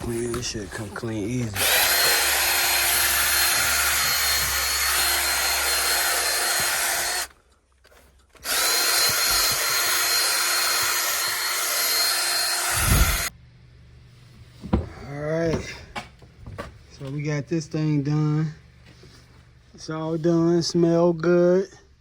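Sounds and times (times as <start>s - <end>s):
power tool whining: 0.0s - 7.4s, 8.4s - 13.3s.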